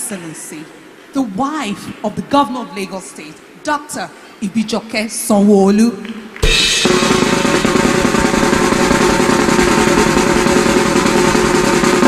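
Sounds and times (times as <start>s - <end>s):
band music: 6.4s - 12.0s
busy drumming: 6.4s - 12.0s
steady held notes: 6.4s - 12.0s.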